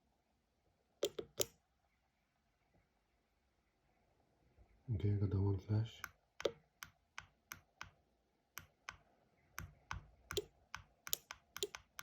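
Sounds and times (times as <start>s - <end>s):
push-buttons clicking: 1.0s - 1.6s, 9.6s - 12.0s.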